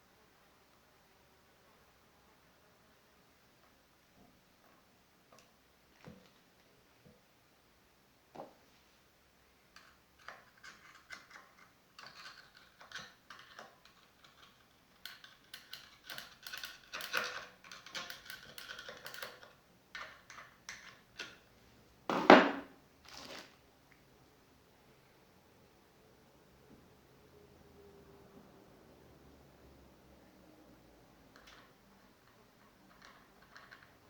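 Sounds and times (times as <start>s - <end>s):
loud knock: 22.1s - 22.7s.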